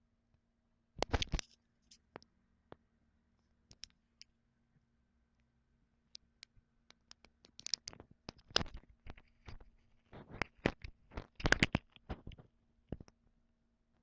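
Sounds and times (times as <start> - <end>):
faint steady hum: 0.0 - 14.0
short clicks and scratching: 7.1 - 12.4.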